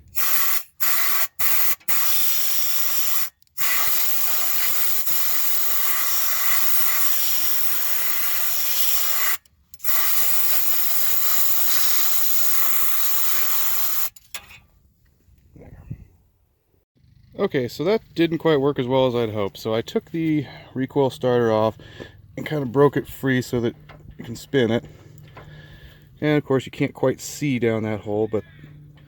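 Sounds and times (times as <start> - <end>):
compressed air blowgun hissing: 0.1 - 14.1.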